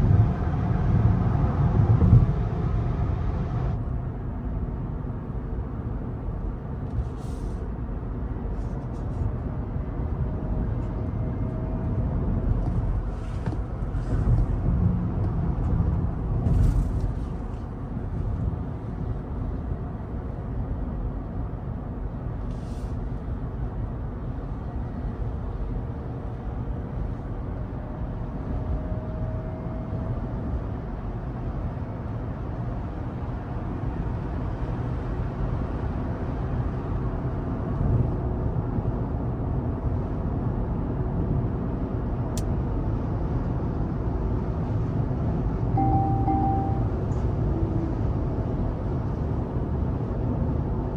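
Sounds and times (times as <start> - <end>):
road and tyre rumble: 0.0 - 50.9
faint whine: 45.8 - 47.1.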